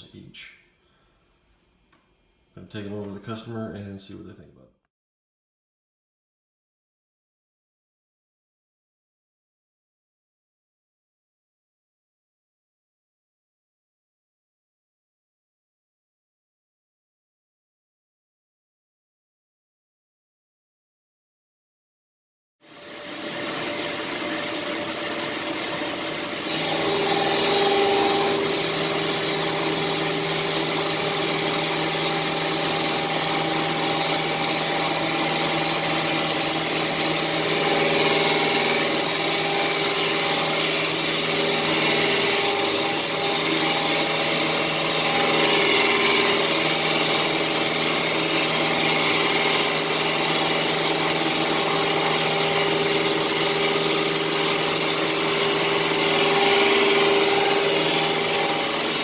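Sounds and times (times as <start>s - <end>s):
machine tool cutting with hiss: 26.4s - 59.0s.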